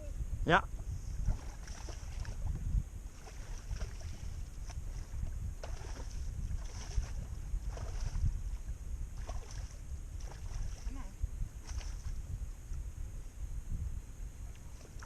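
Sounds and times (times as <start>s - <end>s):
wind rumbling on microphone: 0.0s - 15.0s
light water sounds: 1.2s - 12.2s.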